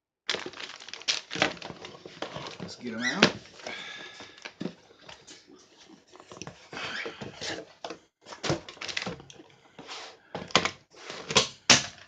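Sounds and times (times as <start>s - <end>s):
packing material rustling: 0.3s - 7.7s, 8.3s - 9.5s
items knocking: 0.3s - 9.5s, 10.3s - 12.0s.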